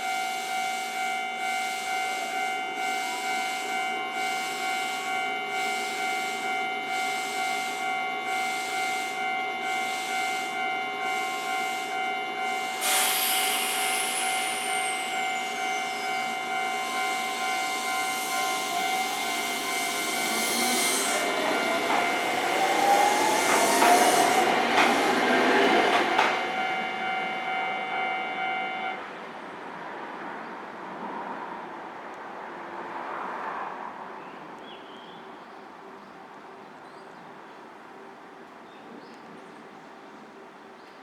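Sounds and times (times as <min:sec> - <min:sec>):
level crossing alarm ringing: 0:00.0 - 0:29.0
train motor whine: 0:03.5 - 0:29.0
high falling whine: 0:12.8 - 0:24.8
wheels clicking over rail joints: 0:24.7 - 0:26.4.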